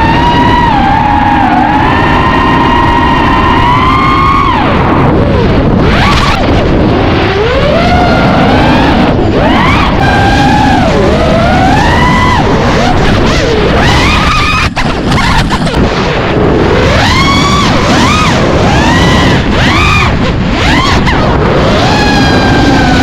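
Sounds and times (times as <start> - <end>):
drone motors whining: 0.0 - 23.0
rushing noise: 0.0 - 23.0.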